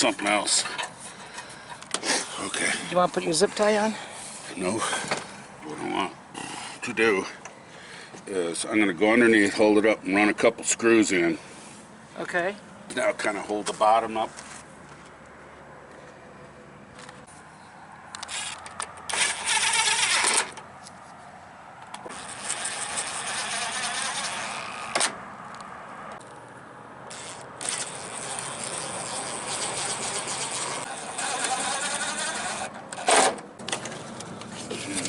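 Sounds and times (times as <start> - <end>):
power drill driving screws: 18.2 - 20.6, 22.0 - 25.2, 27.1 - 33.4.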